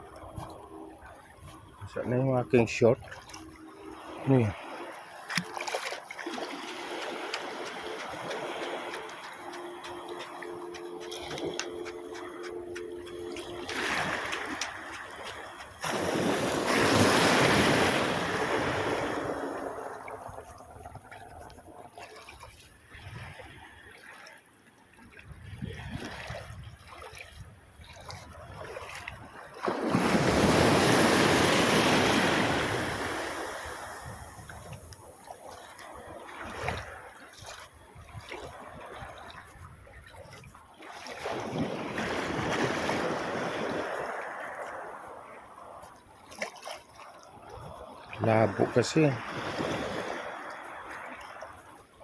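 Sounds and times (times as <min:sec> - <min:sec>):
sea waves surging: 0:00.0 - 0:22.4, 0:29.6 - 0:37.6, 0:40.9 - 0:46.7, 0:47.4 - 0:52.0
water splashing: 0:00.0 - 0:52.0.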